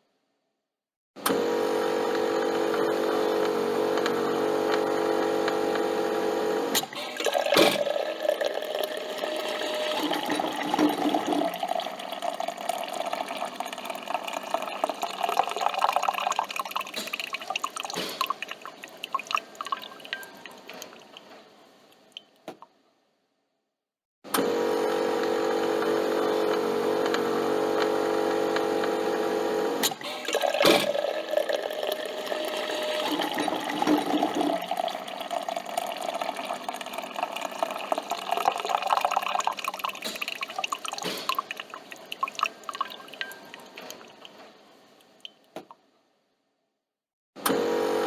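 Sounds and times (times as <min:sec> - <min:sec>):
coffee machine pump humming: 0:01.2 - 0:21.0, 0:24.4 - 0:44.3, 0:47.5 - 0:48.0
coffee streaming into cup: 0:01.6 - 0:21.2, 0:24.6 - 0:44.4.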